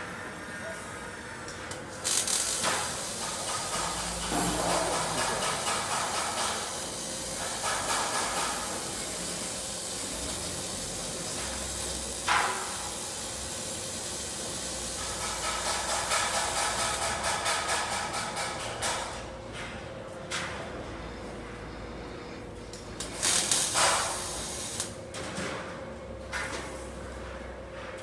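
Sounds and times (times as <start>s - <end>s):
welding arc crackling hiss: 1.7s - 19.2s, 23.0s - 25.0s.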